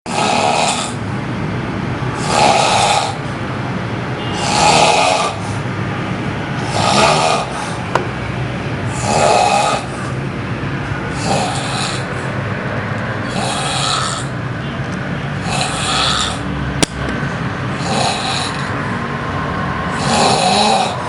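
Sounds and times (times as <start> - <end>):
person snoring loudly: 0.1 - 1.0, 2.2 - 3.2, 4.4 - 5.6, 6.6 - 7.8, 8.9 - 10.0, 11.1 - 12.2, 13.2 - 14.4, 15.4 - 16.5, 17.7 - 18.7, 19.9 - 21.0
sharp click: 16.8 - 17.2.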